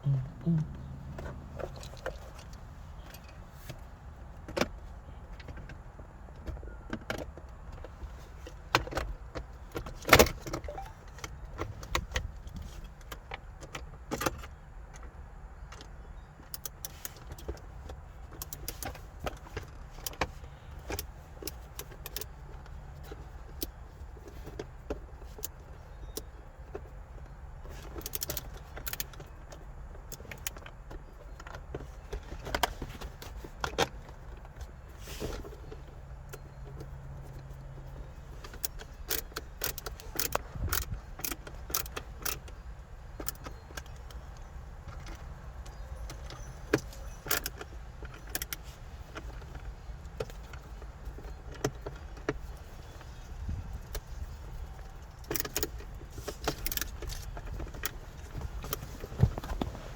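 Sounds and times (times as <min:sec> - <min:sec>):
steady low rumble: 0:00.0 - 0:03.1
clicks and knocks of car parts: 0:00.8 - 0:59.9.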